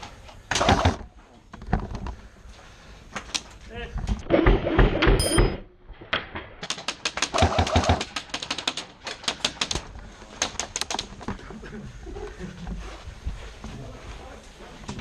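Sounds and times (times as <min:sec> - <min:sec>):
airsoft guns firing rapid clicks: 0:06.6 - 0:11.1.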